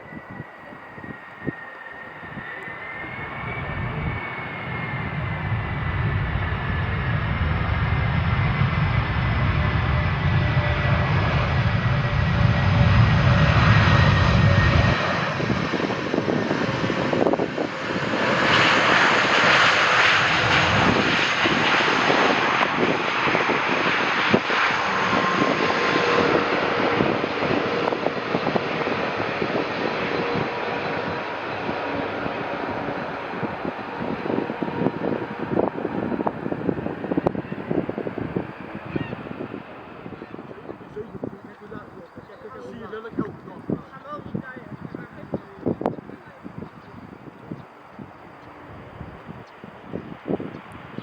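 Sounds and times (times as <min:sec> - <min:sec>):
jet airliner engine rush: 0:00.0 - 0:51.0
deep rumble: 0:02.3 - 0:42.7.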